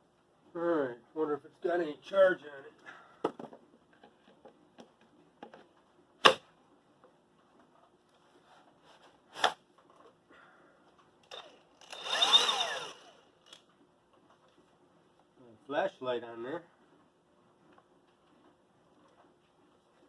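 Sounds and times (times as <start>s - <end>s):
band saw motor spinning: 11.3s - 13.6s.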